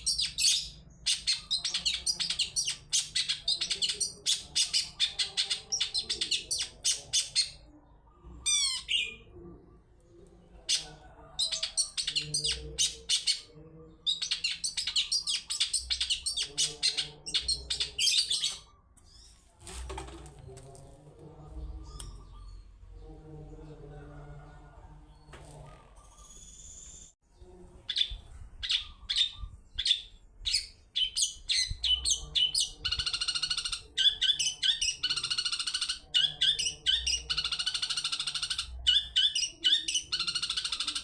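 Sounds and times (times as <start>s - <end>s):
bird singing chattering notes: 0.0s - 7.6s, 10.7s - 19.3s.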